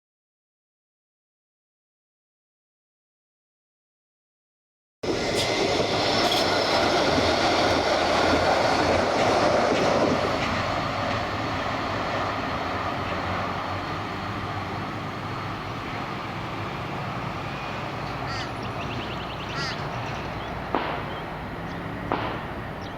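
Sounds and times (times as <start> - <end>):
tram running along track: 5.0 - 22.9.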